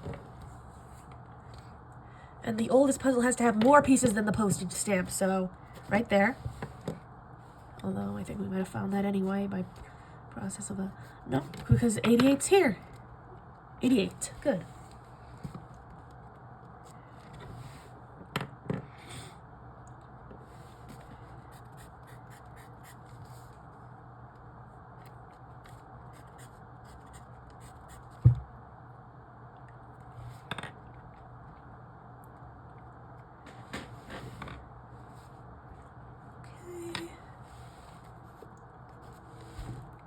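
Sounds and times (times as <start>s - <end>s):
pen scratching on paper: 21.5s - 23.2s.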